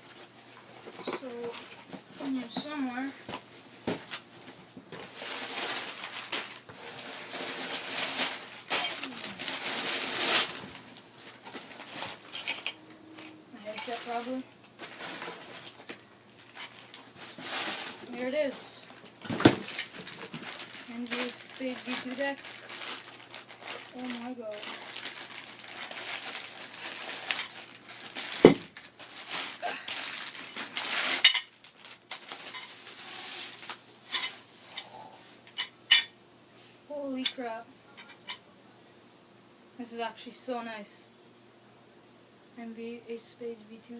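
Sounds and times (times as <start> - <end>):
packing material rustling: 4.9 - 12.6, 13.6 - 34.5.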